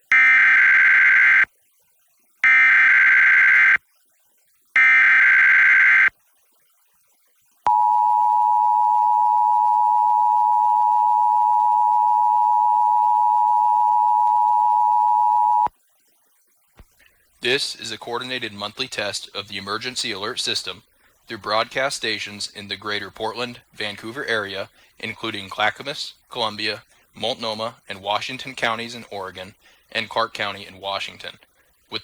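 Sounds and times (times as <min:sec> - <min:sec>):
two-tone attention signal: 0:07.7 - 0:15.7.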